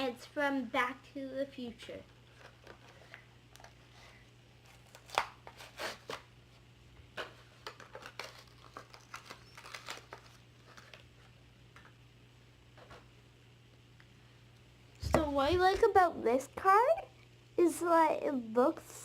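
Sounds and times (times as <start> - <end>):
plastic and cardboard crinkling: 2.2 - 6.3, 7.1 - 11.4
packaging ripping: 4.6 - 6.3, 7.2 - 11.3.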